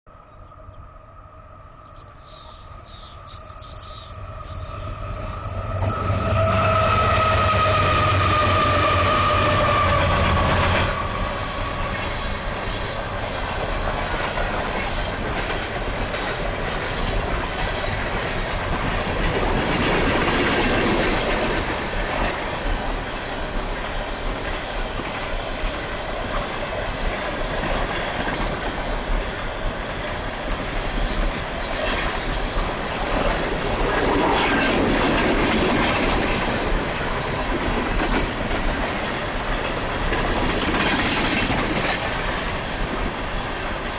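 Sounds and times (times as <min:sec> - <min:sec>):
train passing on track: 0:00.1 - 0:43.9
train horn: 0:01.4 - 0:12.4
train wheels clickety-clack: 0:01.8 - 0:43.9.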